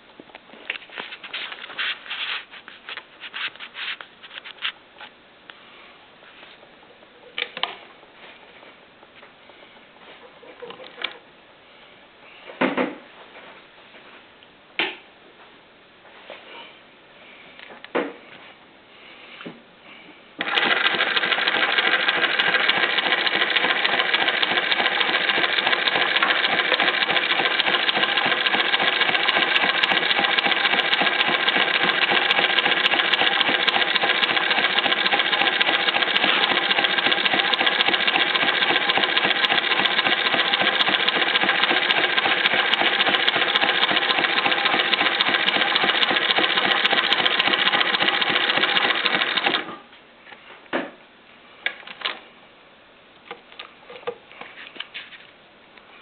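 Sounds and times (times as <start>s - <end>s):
sewing machine clattering: 20.4s - 49.8s.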